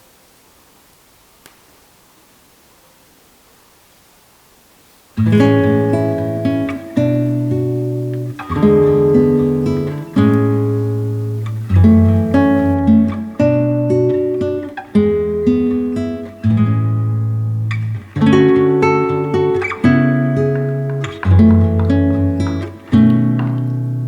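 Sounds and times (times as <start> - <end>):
acoustic guitar slow chords: 5.2 - 24.0.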